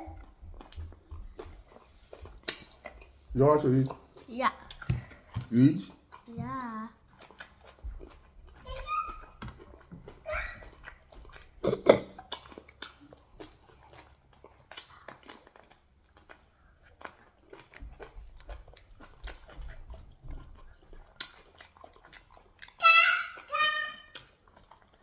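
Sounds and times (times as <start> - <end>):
chewing and lip smacks: 0.0 - 25.0
short high-pitched cries: 22.8 - 24.1.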